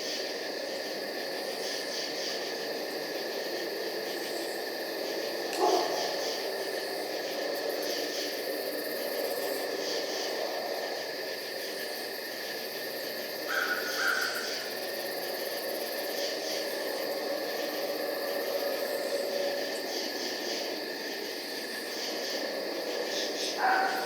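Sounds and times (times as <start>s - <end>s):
crickets chirping: 0.0s - 24.0s.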